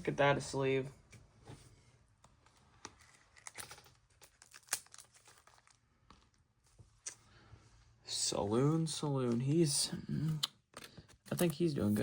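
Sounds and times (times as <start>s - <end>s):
plastic wrapper crinkling: 2.8s - 7.2s.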